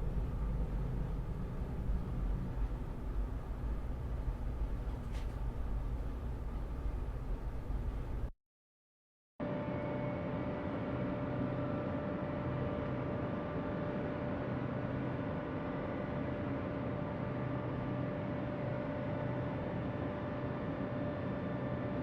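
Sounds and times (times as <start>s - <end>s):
mechanical hum with whine: 0.0s - 8.3s, 9.4s - 22.0s.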